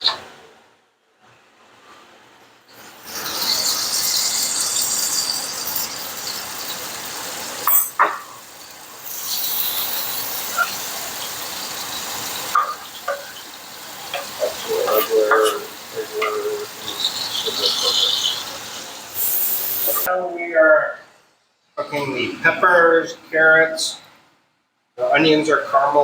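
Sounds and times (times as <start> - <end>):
vegetables sizzling in a frying pan: 2.7 - 20.1.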